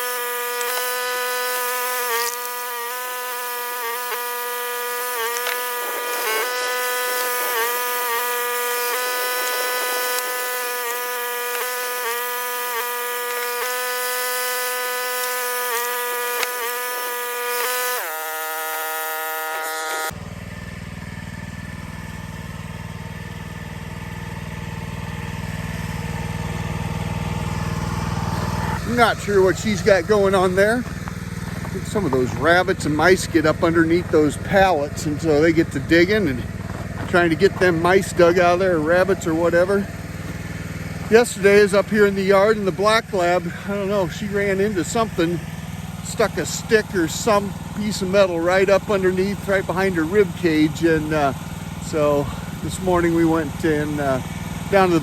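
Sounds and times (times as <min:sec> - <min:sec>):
log splitter whine: 0:00.0 - 0:55.0
low engine rumble: 0:20.1 - 0:55.0.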